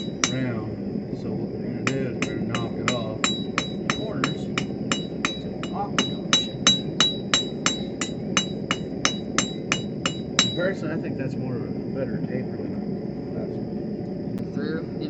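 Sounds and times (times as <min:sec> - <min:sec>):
hammer striking steel on anvil: 0:00.0 - 0:00.6, 0:01.8 - 0:10.8.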